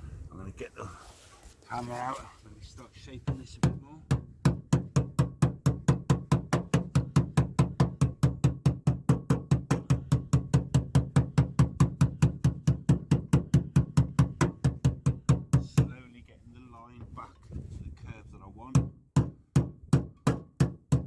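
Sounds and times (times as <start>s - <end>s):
hammer beating metal plate: 3.3s - 16.0s, 18.7s - 21.0s.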